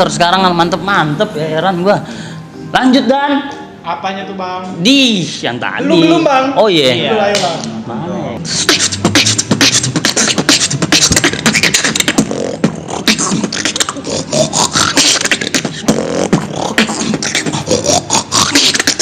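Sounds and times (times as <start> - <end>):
person beatboxing: 8.4 - 19.0.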